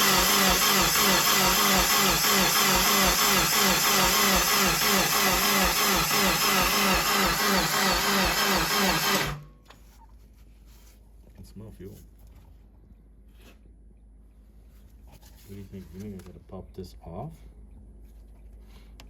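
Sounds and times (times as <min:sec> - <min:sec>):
engine cranking on starter: 0:00.0 - 0:09.5.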